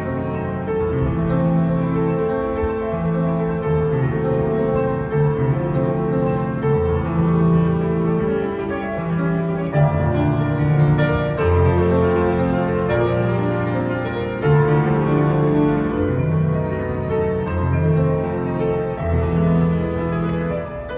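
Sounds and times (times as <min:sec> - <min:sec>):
slow piano piece: 0:00.0 - 0:20.9.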